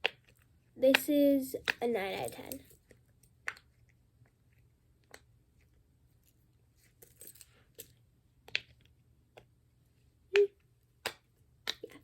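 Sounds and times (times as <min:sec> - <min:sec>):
fidget toy pops and clicks: 0:10.3 - 0:11.9.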